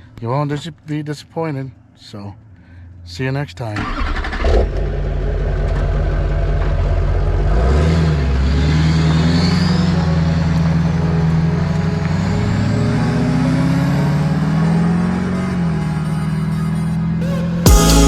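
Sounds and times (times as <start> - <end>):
diesel truck engine revving: 3.8 - 18.0.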